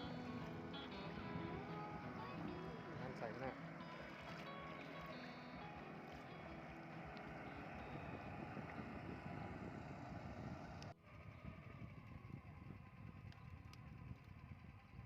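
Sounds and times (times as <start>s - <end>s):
water noise: 0.0s - 11.0s
boat motor running: 0.0s - 15.0s
wind noise: 7.8s - 15.0s.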